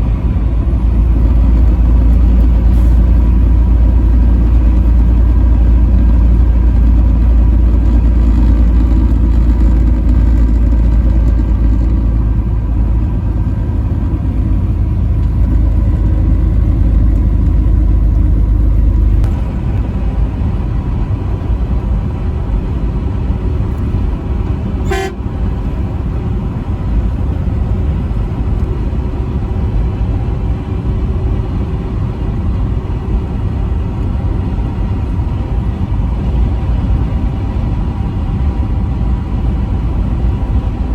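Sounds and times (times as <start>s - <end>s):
truck engine and road noise: 0.0s - 40.9s
high-pitched horn toot: 24.8s - 25.2s.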